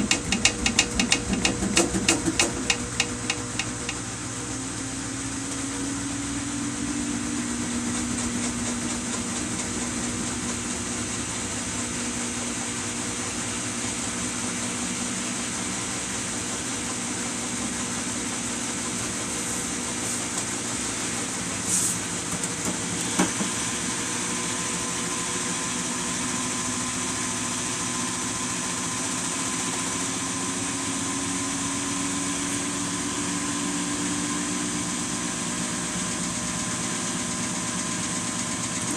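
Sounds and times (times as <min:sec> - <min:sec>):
washing machine motor hum: 0:00.0 - 0:38.9.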